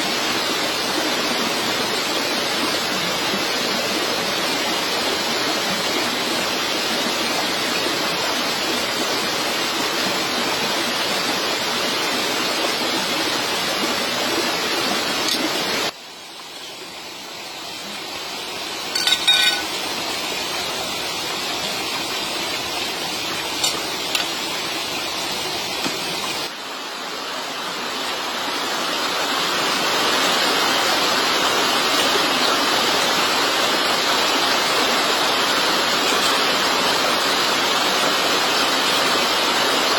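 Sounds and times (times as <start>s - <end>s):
water rushing: 0.0s - 39.9s
ringing clink: 19.0s - 19.7s.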